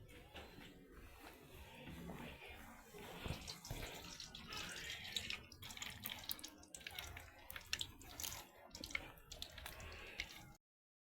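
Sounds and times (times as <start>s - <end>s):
water running and splashing: 3.0s - 10.6s.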